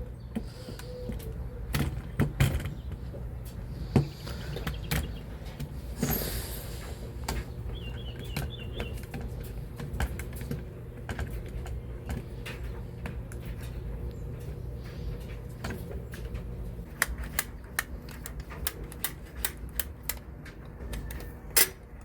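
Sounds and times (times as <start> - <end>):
rifle parts clicking and tapping: 16.9 - 22.0.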